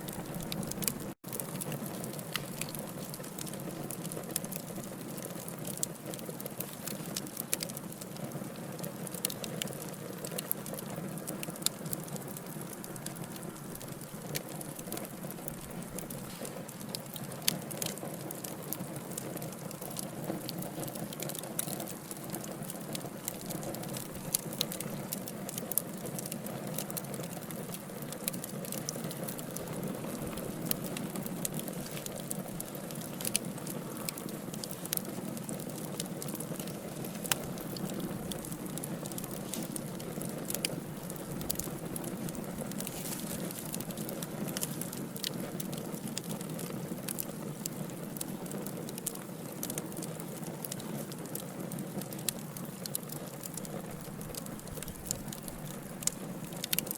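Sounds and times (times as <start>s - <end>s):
logs crackling: 0.0s - 56.9s
sharp pops and snaps: 8.9s - 56.9s.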